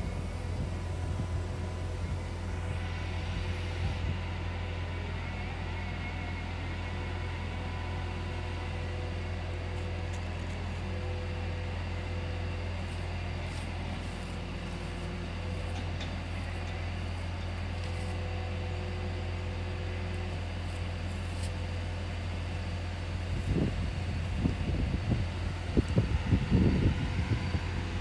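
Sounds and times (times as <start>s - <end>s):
air conditioner humming: 0.0s - 4.1s.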